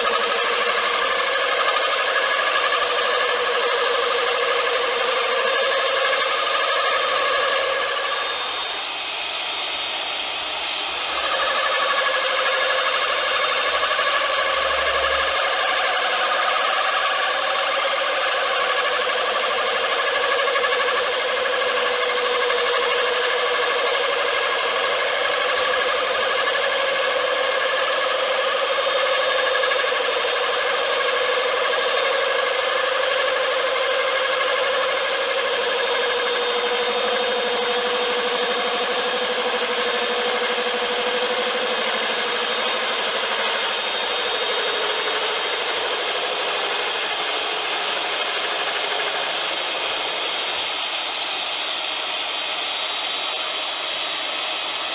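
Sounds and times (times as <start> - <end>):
power drill grinding through tile: 0.0 - 54.9.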